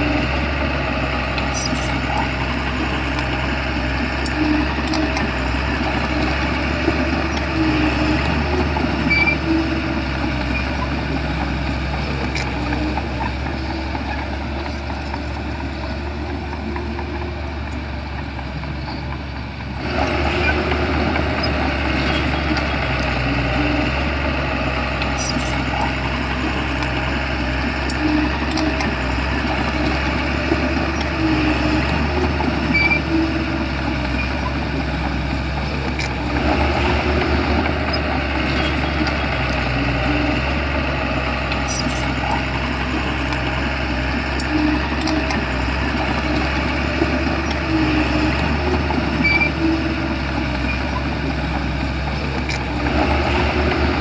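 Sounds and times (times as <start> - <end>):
bulldozer diesel engine running: 0.0 - 54.0.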